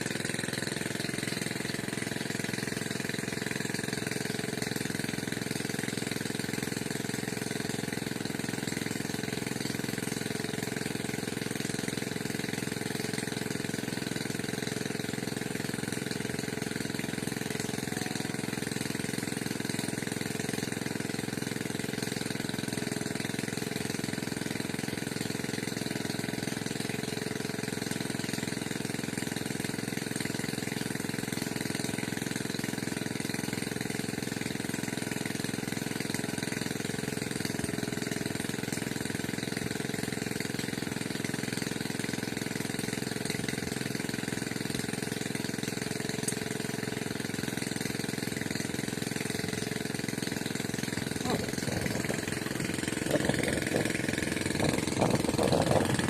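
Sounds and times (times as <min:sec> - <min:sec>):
mechanical drone: 0:51.0 - 0:56.0.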